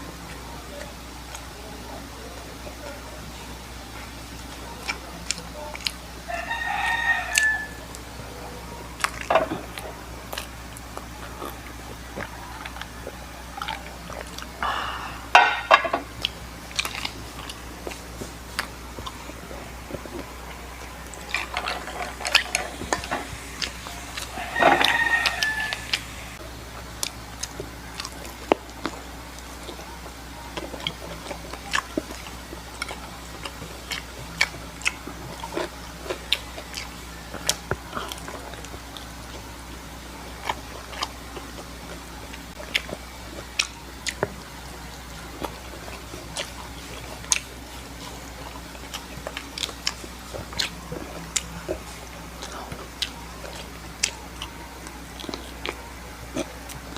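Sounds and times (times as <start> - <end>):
food being bitten and chewed: 0.1 - 56.9
rooster crowing: 6.2 - 9.0, 11.1 - 15.9, 20.3 - 26.4.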